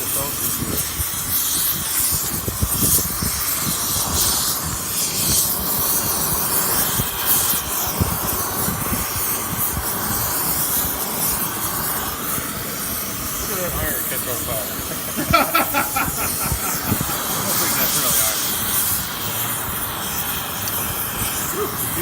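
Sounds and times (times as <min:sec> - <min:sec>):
gas torch flame hissing: 0:00.0 - 0:22.0
crackling: 0:00.8 - 0:22.0.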